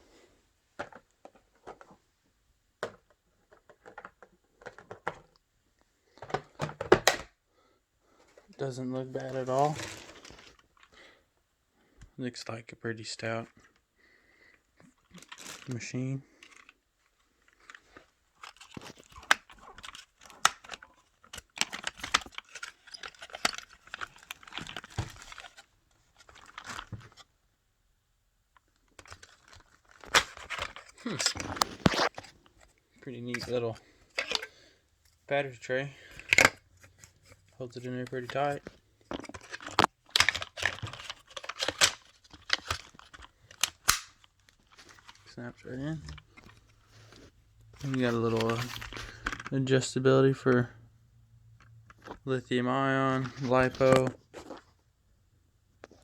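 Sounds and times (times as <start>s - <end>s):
plastic clicks and knocks: 2.8s - 5.4s, 6.2s - 7.3s, 38.2s - 45.2s
plastic toy clicks and rattles: 18.4s - 25.6s.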